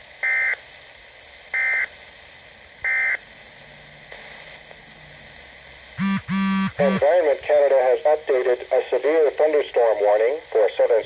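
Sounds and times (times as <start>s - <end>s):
digital data tone bursts: 6.0s - 7.0s.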